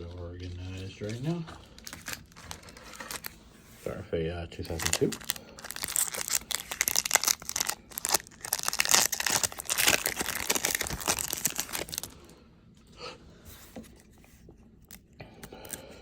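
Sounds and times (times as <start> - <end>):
faint handling sounds: 0.0 - 16.0
wrapper crinkling and tearing: 0.4 - 3.4, 4.6 - 12.3.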